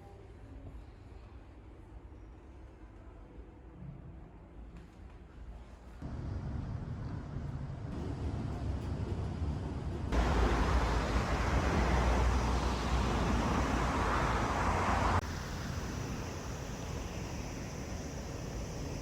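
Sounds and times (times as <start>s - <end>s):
road traffic rumble: 6.0s - 19.0s.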